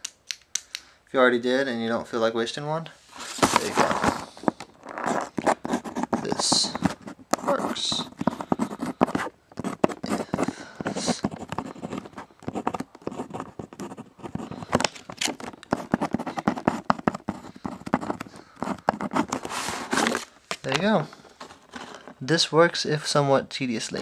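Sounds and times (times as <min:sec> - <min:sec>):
pencil scratching on paper: 0:04.9 - 0:14.7, 0:15.3 - 0:20.1.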